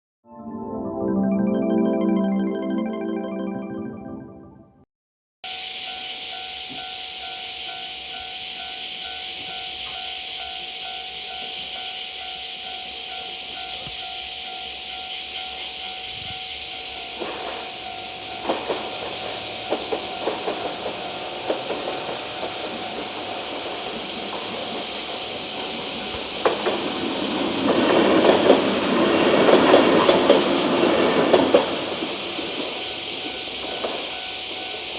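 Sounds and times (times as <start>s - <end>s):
steady high hiss: 5.5s - 29.0s, 30.3s - 34.9s
train passing with rattling wheels: 5.5s - 34.9s
train wheels clicking over rail joints: 16.6s - 34.9s.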